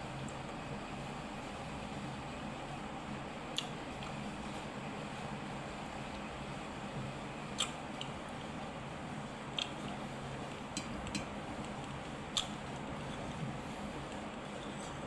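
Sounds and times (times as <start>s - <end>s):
steady background hum: 0.0s - 15.0s
chewing and mouth smacks: 7.6s - 8.2s, 9.6s - 10.0s, 11.8s - 13.2s.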